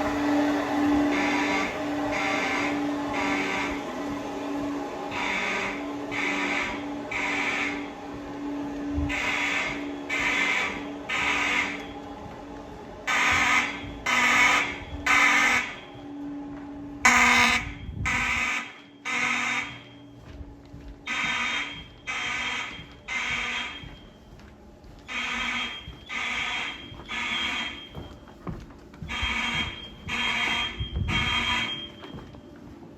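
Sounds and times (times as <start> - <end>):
fire alarm horn blasts: 0.1 - 3.9, 5.1 - 8.1, 9.0 - 12.1, 13.1 - 16.4, 17.0 - 20.2, 21.0 - 24.2, 25.1 - 28.1, 29.1 - 32.3.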